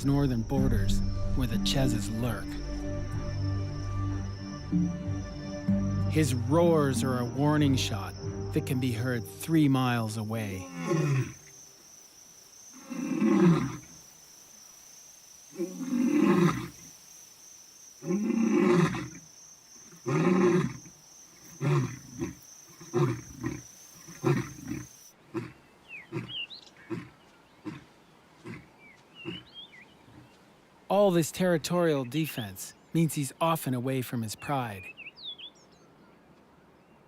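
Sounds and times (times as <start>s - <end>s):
lion grunting: 10.5s - 11.4s
lion roaring: 10.6s - 11.4s
faint bird chirps: 19.1s - 30.5s, 34.3s - 37.0s.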